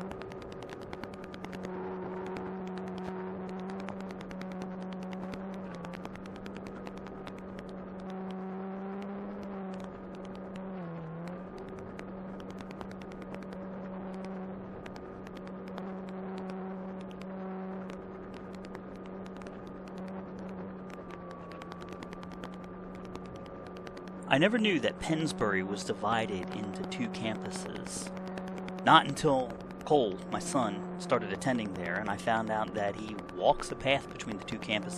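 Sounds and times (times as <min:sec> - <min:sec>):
sharp clicks: 0:00.0 - 0:34.9
model airplane electric motor: 0:14.1 - 0:34.9.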